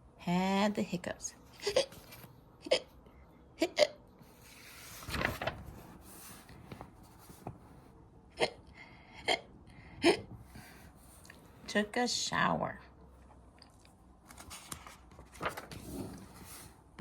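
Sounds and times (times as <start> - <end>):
woman imitating hiccups: 3.6 - 4.0, 8.3 - 8.6, 9.2 - 10.3.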